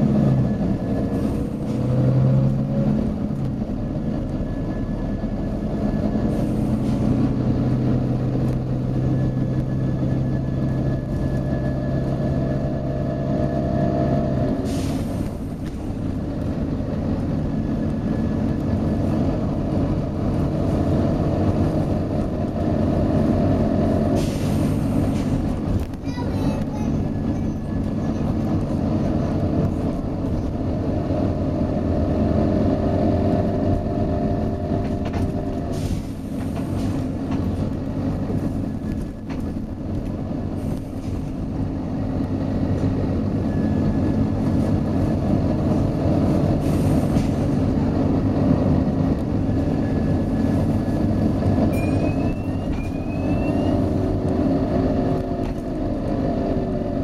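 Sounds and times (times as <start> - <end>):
bus diesel engine running: 0.0 - 57.0.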